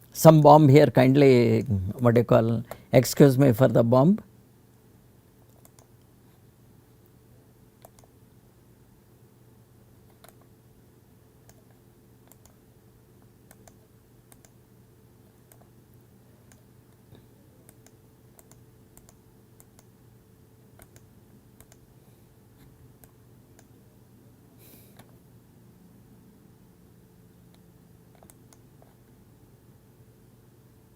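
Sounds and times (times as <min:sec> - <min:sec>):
low steady hum: 0:00.0 - 0:30.9
mouse and keyboard clicking: 0:05.5 - 0:05.9, 0:07.8 - 0:08.1, 0:11.4 - 0:12.6, 0:13.5 - 0:14.6, 0:17.7 - 0:19.9, 0:20.8 - 0:21.8, 0:28.1 - 0:29.0.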